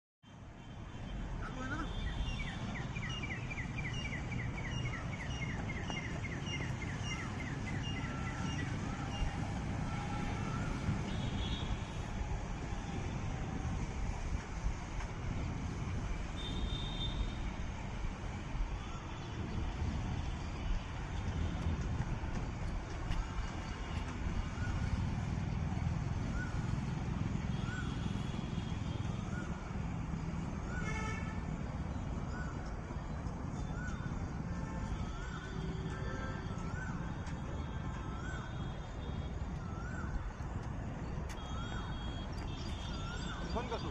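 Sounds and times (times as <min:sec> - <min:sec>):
birds chirping: 0:01.6 - 0:09.4, 0:39.6 - 0:43.9.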